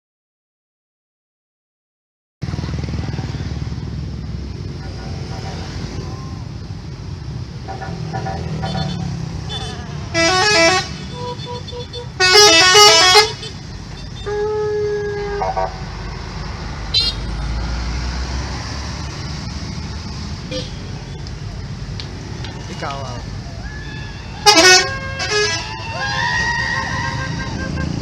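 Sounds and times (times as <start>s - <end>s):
bus engines rumbling: 2.4s - 28.0s
multi-note bus horns: 7.6s - 15.8s, 24.4s - 26.0s, 26.9s - 28.0s.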